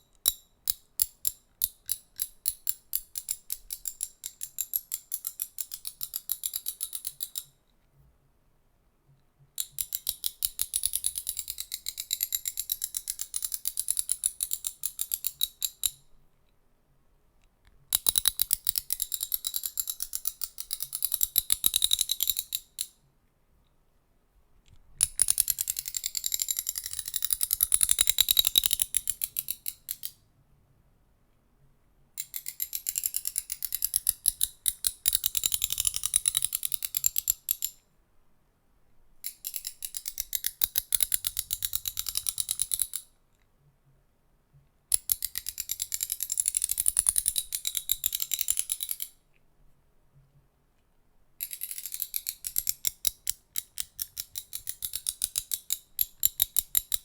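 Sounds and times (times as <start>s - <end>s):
rapid clicking of small object: 0.0s - 7.6s, 9.6s - 16.1s, 17.4s - 23.0s, 24.6s - 30.2s, 32.2s - 37.8s, 39.2s - 43.2s, 44.9s - 49.3s, 51.4s - 57.0s.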